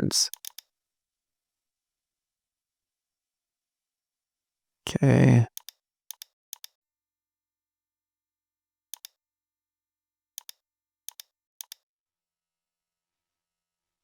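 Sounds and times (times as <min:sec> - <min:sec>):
computer mouse clicks: 0:00.3 - 0:00.6, 0:05.6 - 0:06.8, 0:08.9 - 0:09.2, 0:10.4 - 0:11.8.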